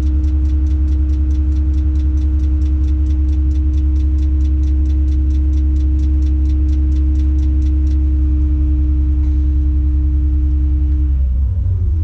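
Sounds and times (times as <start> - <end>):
fast regular ticking: 0.0 - 8.2
crane engine droning: 0.0 - 12.0
steady engine whine: 0.0 - 12.0.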